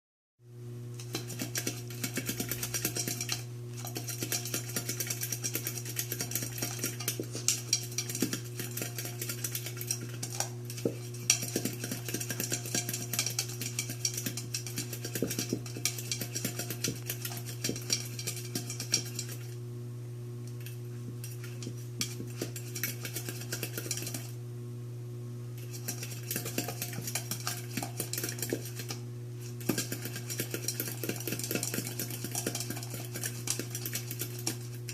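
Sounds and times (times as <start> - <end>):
puppy licking food bowl: 1.0 - 19.5, 20.6 - 24.3, 25.6 - 34.9
food bowl rattling on floor: 1.1 - 19.5, 25.7 - 28.9, 29.6 - 34.9.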